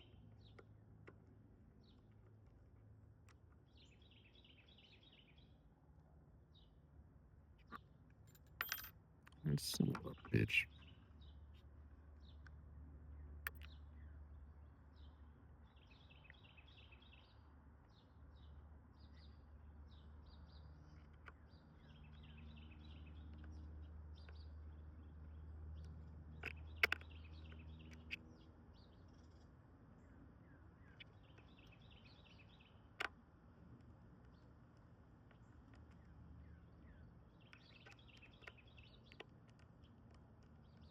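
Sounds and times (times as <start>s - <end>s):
birds chirping: 9.4s - 11.4s, 30.0s - 32.9s, 35.3s - 40.9s.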